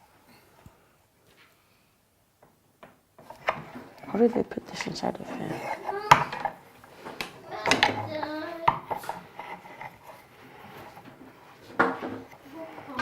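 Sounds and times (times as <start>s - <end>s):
child murmuring: 5.4s - 6.5s, 7.4s - 8.9s, 12.4s - 13.0s.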